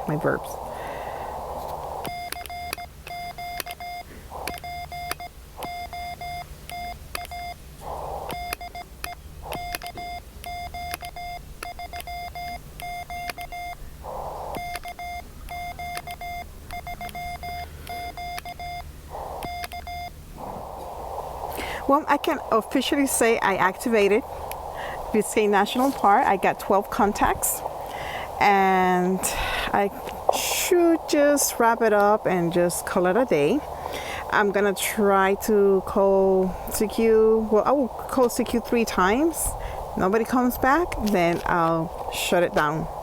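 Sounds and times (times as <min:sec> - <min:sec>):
radio receiver hiss: 0:00.0 - 0:43.0
morse code beeps: 0:02.0 - 0:20.2.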